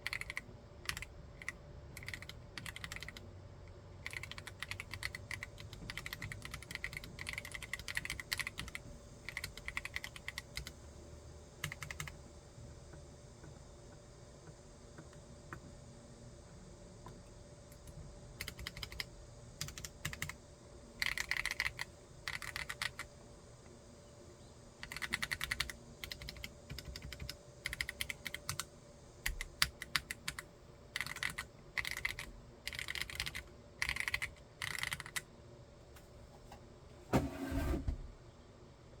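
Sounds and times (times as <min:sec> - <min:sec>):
mechanical keyboard typing: 0:00.0 - 0:03.2, 0:04.0 - 0:10.8, 0:11.6 - 0:12.2, 0:17.8 - 0:20.4, 0:21.0 - 0:23.1, 0:24.8 - 0:35.3.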